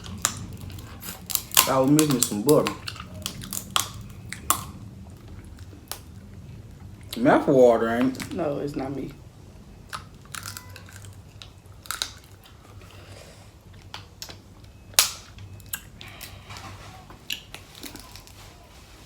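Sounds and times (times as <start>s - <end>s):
shell cracks and crunches: 0.0s - 4.8s, 9.9s - 12.6s
person chewing: 0.0s - 7.3s, 9.8s - 18.5s.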